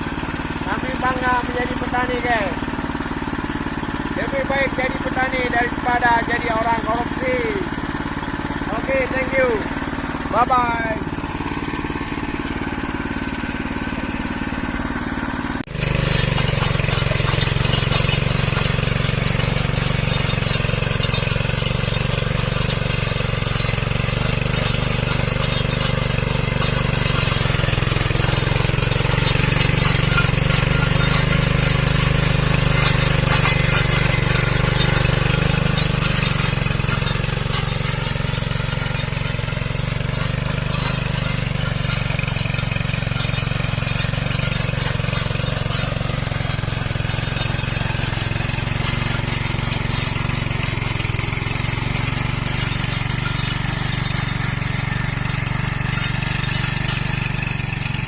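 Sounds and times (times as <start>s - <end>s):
cultivator engine running: 0.0s - 58.0s.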